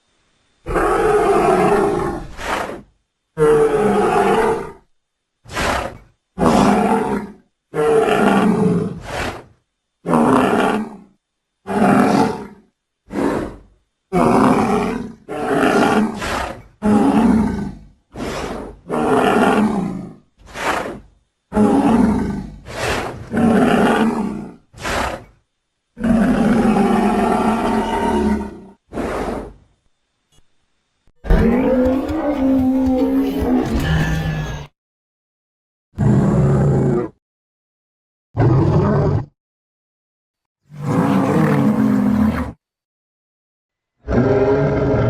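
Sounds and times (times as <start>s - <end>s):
deep animal roars and bellows: 0.7s - 4.8s, 5.5s - 11.1s, 11.7s - 25.3s, 26.0s - 29.6s, 31.2s - 34.7s, 36.0s - 37.2s, 38.4s - 39.3s, 40.7s - 42.6s, 44.0s - 45.0s.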